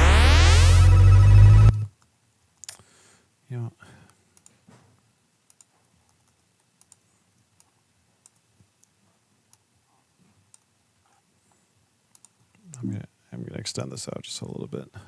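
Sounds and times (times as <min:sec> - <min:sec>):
computer keyboard and mouse clicks: 0:05.5 - 0:07.0, 0:12.1 - 0:12.4.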